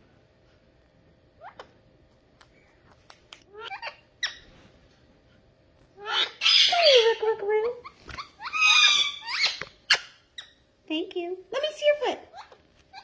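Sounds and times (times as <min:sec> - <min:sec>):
parrot squawking: 0:03.5 - 0:04.5, 0:06.0 - 0:10.6.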